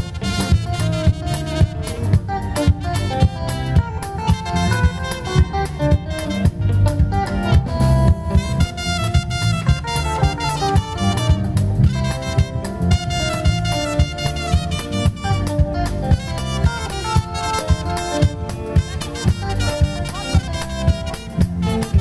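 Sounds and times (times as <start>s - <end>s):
drum hits: 0.0s - 22.0s
live band playing instrumental: 0.0s - 22.0s.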